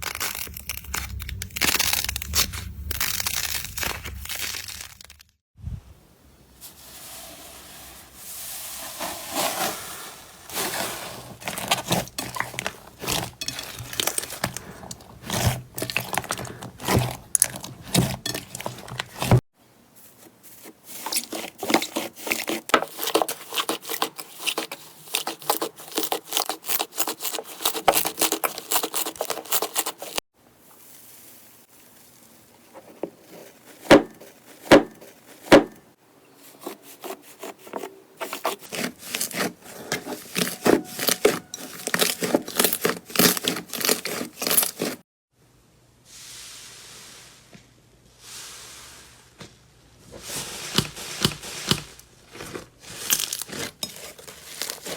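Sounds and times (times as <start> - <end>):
slime crackling and squelching: 0.0 - 5.4, 8.9 - 19.4, 38.2 - 45.0, 50.2 - 54.9.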